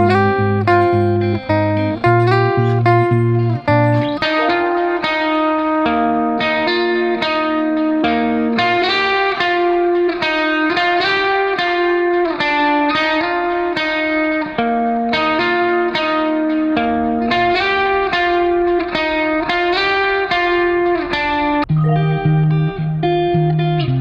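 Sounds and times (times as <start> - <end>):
guitar music: 0.0 - 24.0.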